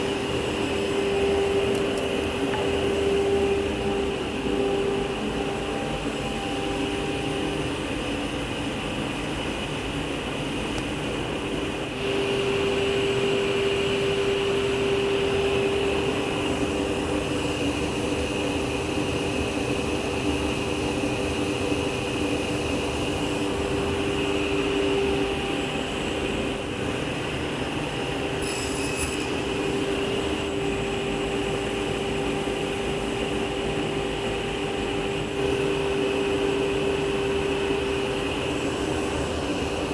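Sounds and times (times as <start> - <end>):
table saw humming: 28.4 - 29.7.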